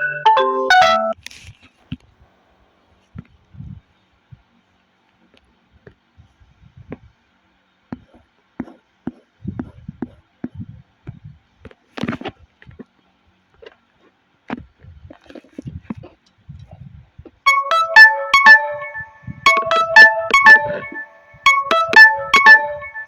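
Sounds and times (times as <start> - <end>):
scraping rustle: 1.2 - 1.9.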